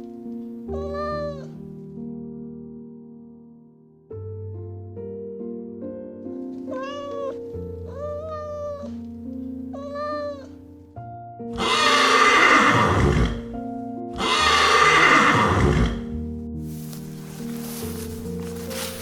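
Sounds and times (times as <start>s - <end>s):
background music: 0.0s - 19.0s
cat meowing: 6.7s - 8.9s, 11.6s - 13.4s, 14.2s - 16.0s
horse neighing: 11.6s - 13.6s, 14.2s - 16.1s.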